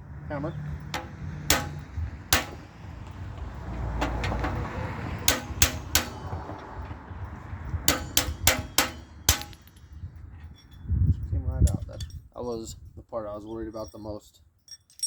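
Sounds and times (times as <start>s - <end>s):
hammer striking metal drift: 0.9s - 3.0s, 3.8s - 6.9s, 7.8s - 9.9s.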